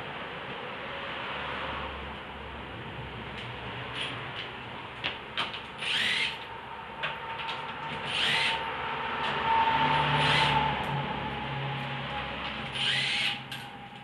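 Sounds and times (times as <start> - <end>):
electric power tool whining: 5.8 - 6.4, 7.9 - 8.6, 12.6 - 13.7.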